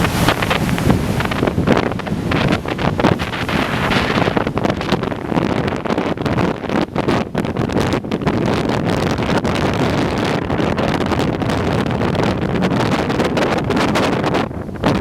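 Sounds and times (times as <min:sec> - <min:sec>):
ocean surf: 0:00.0 - 0:08.4
wind buffeting microphone: 0:00.0 - 0:15.0.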